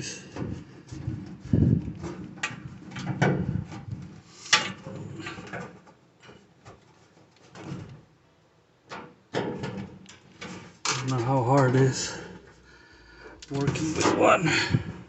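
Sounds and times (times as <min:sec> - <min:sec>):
clicks and knocks from handling parts: 0:04.5 - 0:08.0, 0:08.9 - 0:11.8, 0:13.4 - 0:14.3.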